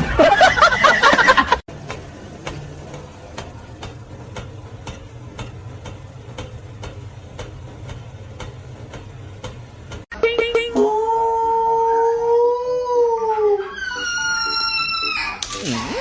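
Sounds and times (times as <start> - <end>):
steady ticking: 1.7 - 10.1.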